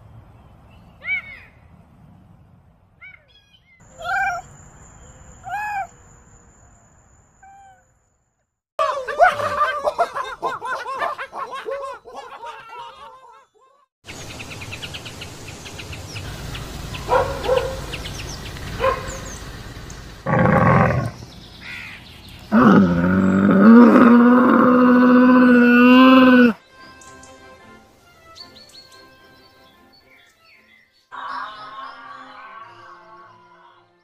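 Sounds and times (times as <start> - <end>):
wavering chirping animal calls: 3.2 - 6.0, 7.4 - 7.9, 20.3 - 26.6
long steady animal call: 20.2 - 21.2, 22.5 - 26.6
loud animal cry: 20.3 - 21.2, 22.5 - 26.6.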